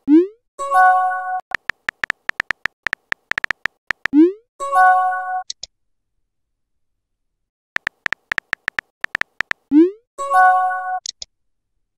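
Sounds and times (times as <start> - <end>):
keyboard tap ticks: 1.5 - 4.1, 7.8 - 9.6.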